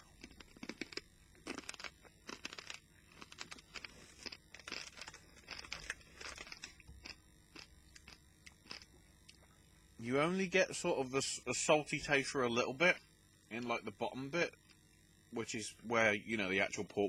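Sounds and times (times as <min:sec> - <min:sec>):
crunching and chewing: 0:00.0 - 0:09.7.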